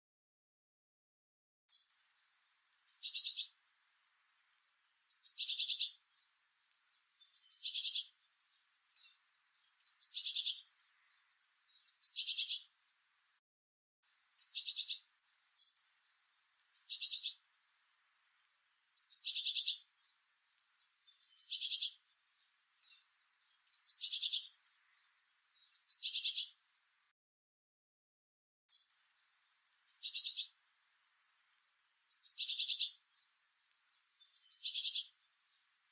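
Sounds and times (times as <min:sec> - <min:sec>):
bird trilling: 0:02.9 - 0:03.6, 0:05.1 - 0:05.9, 0:07.4 - 0:08.1, 0:09.9 - 0:10.6, 0:11.9 - 0:12.7, 0:14.4 - 0:15.0, 0:16.8 - 0:17.4, 0:19.0 - 0:19.8, 0:21.2 - 0:22.0, 0:23.8 - 0:24.5, 0:25.8 - 0:26.6, 0:29.9 - 0:30.6, 0:32.1 - 0:33.0, 0:34.4 - 0:35.1.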